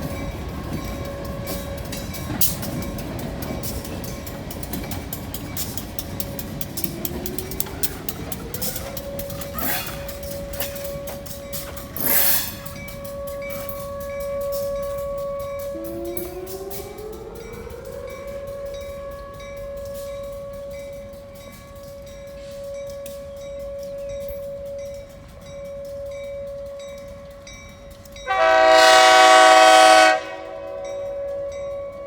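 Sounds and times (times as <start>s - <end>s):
train wheels clicking: 0.0s - 32.0s
warning siren wailing: 6.8s - 32.0s
second siren winding up: 7.4s - 11.3s.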